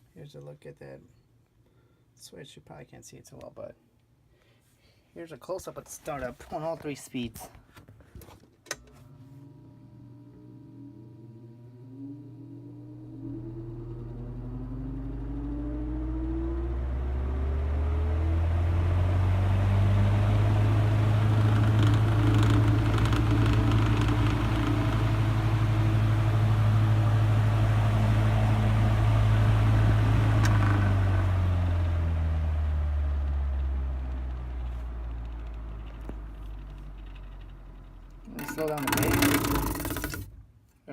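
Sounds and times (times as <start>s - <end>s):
fan winding down: 8.7s - 40.4s
table fan running: 8.8s - 40.4s.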